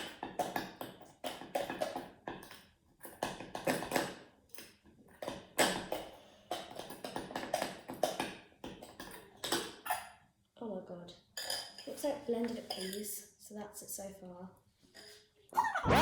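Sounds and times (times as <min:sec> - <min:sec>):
spoon clinking in a bowl: 0:11.4 - 0:11.9.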